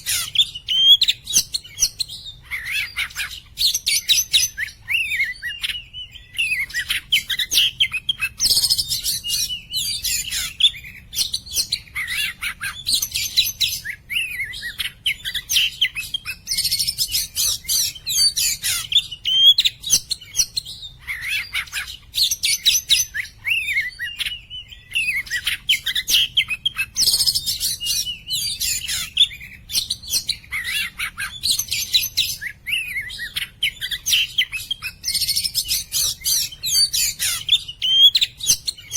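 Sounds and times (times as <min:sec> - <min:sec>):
bird singing whistled phrases: 0:00.0 - 0:38.9.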